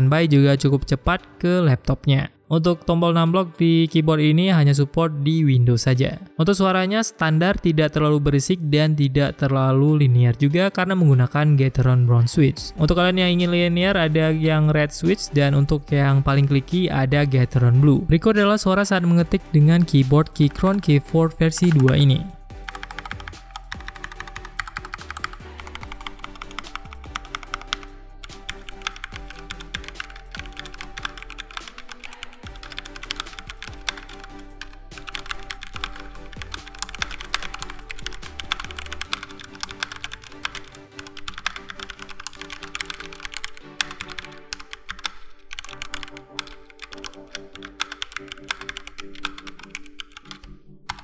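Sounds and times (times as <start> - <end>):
background music: 0.0 - 51.0
mechanical keyboard typing: 12.9 - 51.0.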